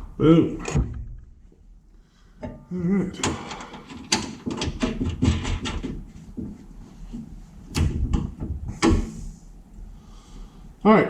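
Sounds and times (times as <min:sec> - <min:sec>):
metal parts clunking: 0:03.2 - 0:06.0.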